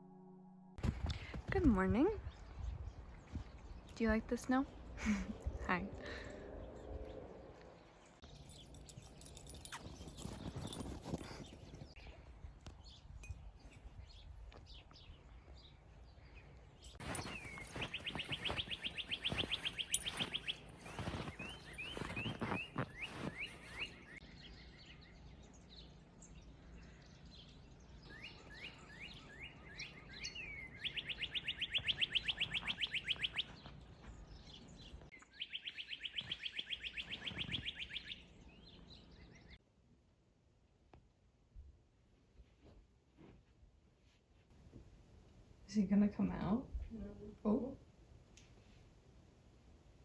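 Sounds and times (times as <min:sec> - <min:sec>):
songbird chirps: 0:00.8 - 0:39.6
songbird trills: 0:12.7 - 0:39.6.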